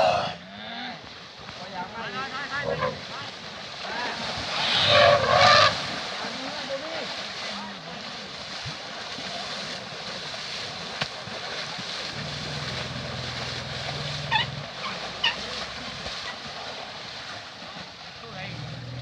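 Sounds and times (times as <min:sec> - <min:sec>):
water splashing: 0:00.0 - 0:19.0
low hum: 0:12.1 - 0:14.8.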